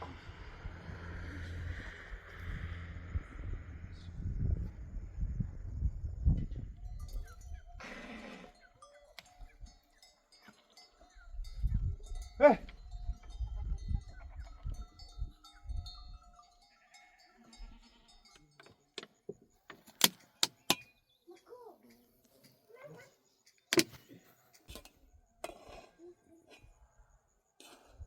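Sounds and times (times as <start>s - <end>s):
low rumbling noise: 0.0s - 6.8s
faint ringing bells: 6.6s - 7.8s, 8.5s - 19.3s
sheep bleating: 17.4s - 18.3s.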